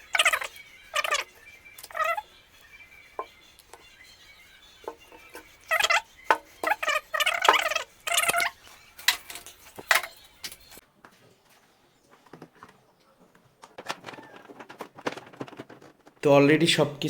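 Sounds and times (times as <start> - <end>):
sharp bird calls: 0.0 - 10.8.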